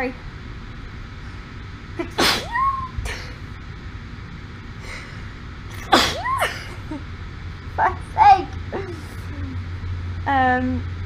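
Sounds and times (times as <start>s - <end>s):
woman sneezing: 2.0s - 3.4s, 5.7s - 6.8s
breathy intake of air: 4.8s - 5.4s.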